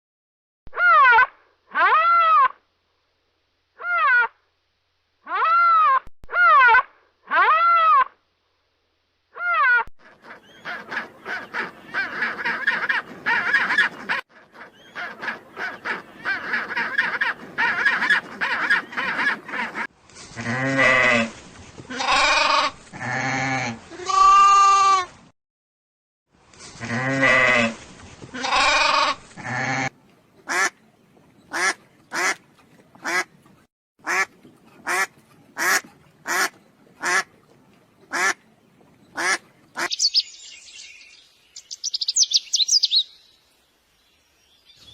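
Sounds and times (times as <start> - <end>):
ducks quacking: 10.0 - 19.9, 28.4 - 30.8, 31.5 - 32.4, 33.0 - 33.4, 34.0 - 38.4, 39.1 - 40.2.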